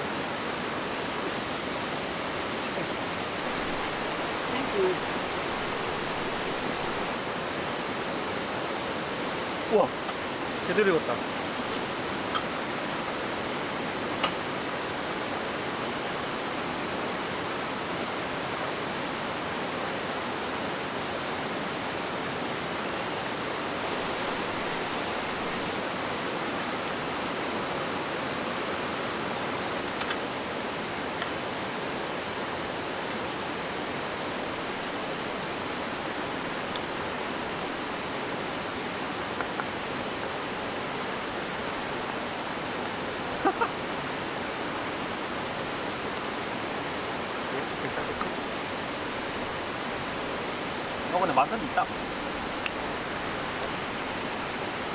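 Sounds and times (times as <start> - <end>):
mountain stream rushing: 0.0 - 54.9.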